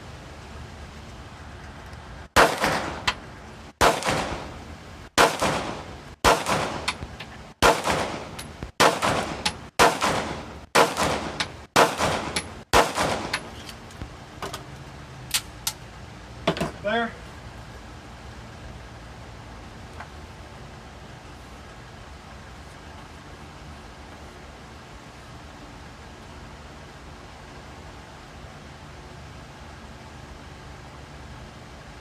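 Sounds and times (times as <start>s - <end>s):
gunshots: 2.4s - 3.1s, 3.8s - 4.5s, 5.2s - 7.0s, 7.6s - 13.4s.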